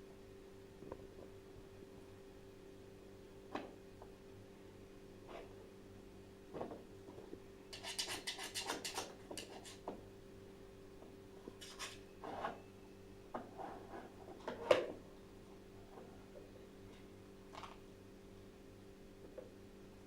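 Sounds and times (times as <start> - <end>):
dog toy scraping and clattering: 7.8 - 9.8, 11.6 - 12.6.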